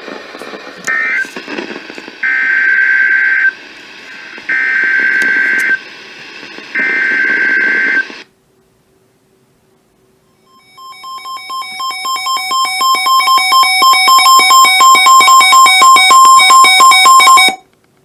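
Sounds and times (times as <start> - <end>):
two-tone electronic alarm beeping: 10.4 - 17.6.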